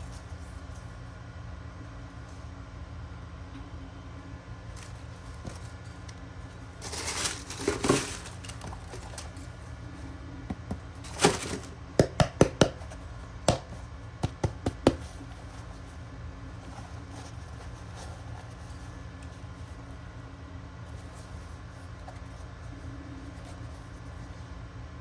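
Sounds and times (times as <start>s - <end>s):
steady low hum: 0.0s - 25.0s
handling noises: 4.7s - 24.6s.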